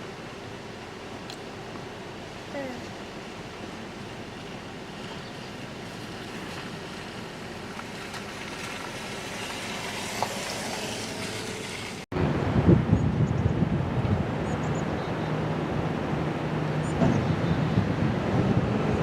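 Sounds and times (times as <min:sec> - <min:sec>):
strong wind rushing: 0:12.1 - 0:19.0
wind gusts buffeting microphone: 0:12.1 - 0:19.0.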